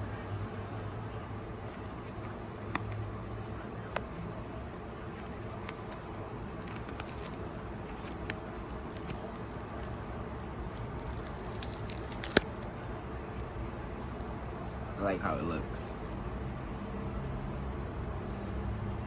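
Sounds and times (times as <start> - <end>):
hands scratching cardboard box: 5.1 - 6.0, 6.6 - 12.6.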